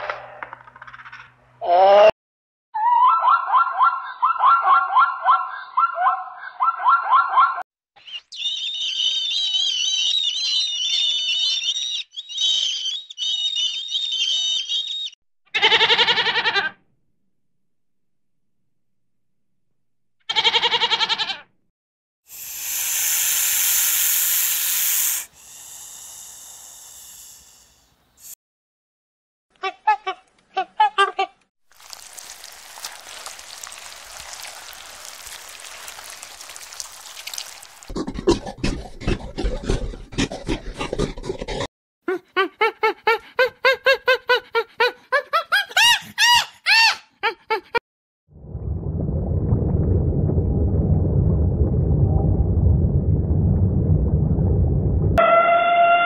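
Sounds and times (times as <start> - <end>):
quavering bleat: 15.6 - 16.8, 20.3 - 21.4.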